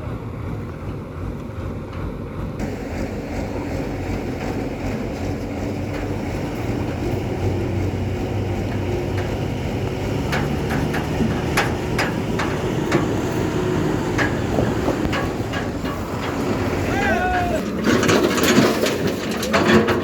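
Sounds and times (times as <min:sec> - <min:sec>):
heavy diesel engine running: 0:00.0 - 0:20.0
metallic clanks and knocks: 0:02.0 - 0:20.0.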